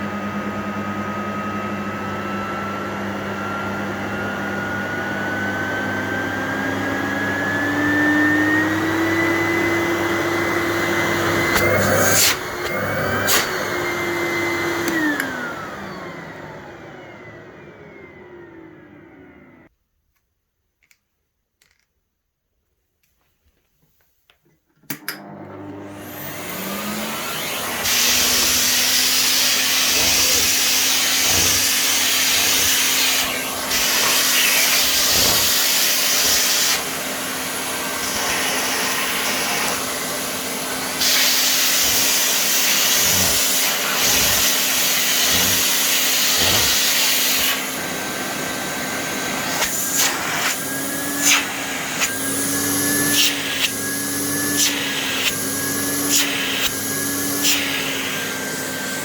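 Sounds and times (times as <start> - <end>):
vacuum cleaner motor humming: 0.0 - 19.7, 24.9 - 59.0
vacuum cleaner switch click: 14.7 - 15.5, 24.9 - 25.8.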